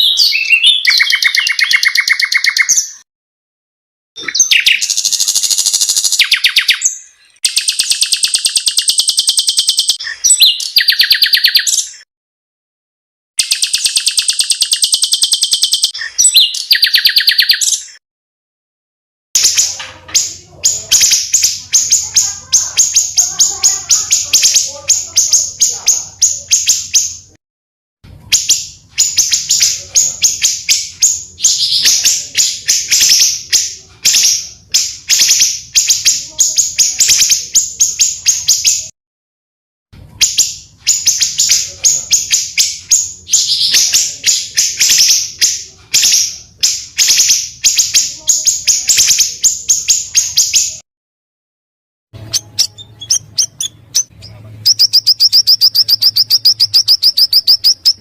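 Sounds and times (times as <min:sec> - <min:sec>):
songbirds chirping and trilling: 0:00.0 - 0:03.0, 0:04.2 - 0:12.1, 0:13.4 - 0:18.0, 0:19.4 - 0:27.4, 0:28.2 - 0:38.9, 0:40.0 - 0:50.8, 0:52.2 - 0:58.0.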